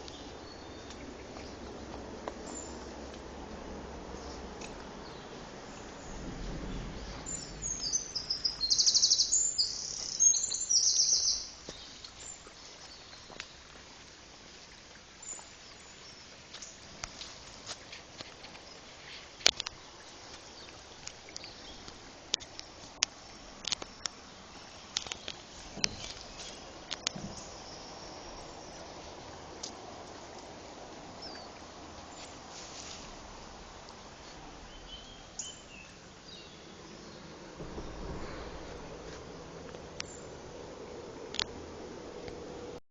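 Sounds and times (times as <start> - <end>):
forest background hiss: 0.0 - 42.8
songbird singing trills: 5.0 - 13.7, 34.6 - 38.0.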